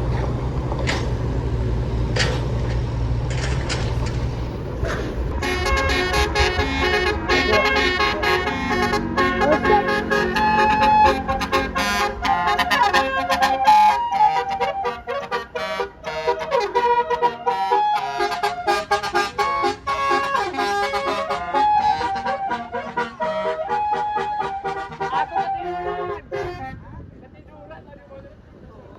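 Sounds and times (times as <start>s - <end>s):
multi-tone musical bus horn: 5.3s - 27.0s.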